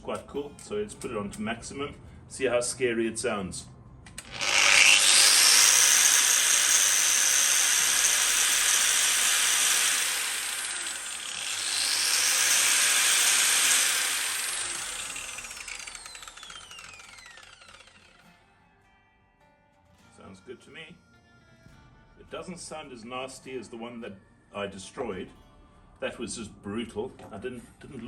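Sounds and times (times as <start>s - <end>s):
angle grinder high whine: 4.2s - 18.3s.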